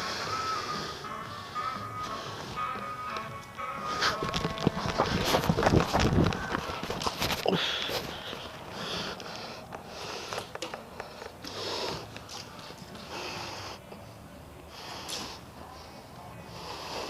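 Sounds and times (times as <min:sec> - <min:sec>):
person breathing close to microphone: 0:00.0 - 0:03.0, 0:06.4 - 0:14.1, 0:14.7 - 0:17.0.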